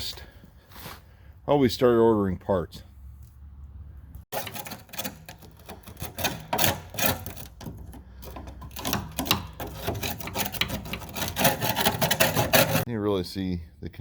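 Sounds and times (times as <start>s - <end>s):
rapid clicking and clattering: 4.3s - 12.9s.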